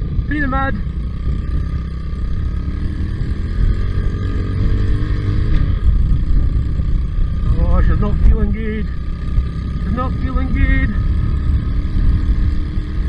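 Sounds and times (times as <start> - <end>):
quad bike engine under load: 0.0 - 13.0
wind buffeting microphone: 1.0 - 9.9.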